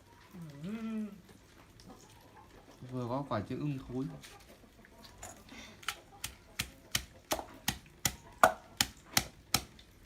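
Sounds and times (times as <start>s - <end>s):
pestle pounding in a mortar: 5.8s - 9.8s.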